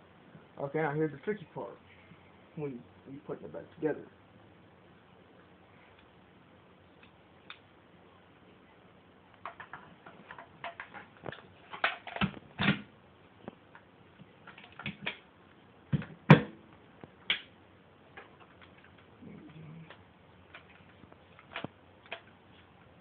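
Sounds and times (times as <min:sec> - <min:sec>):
rifle parts clicking and knocking: 0:09.4 - 0:12.8.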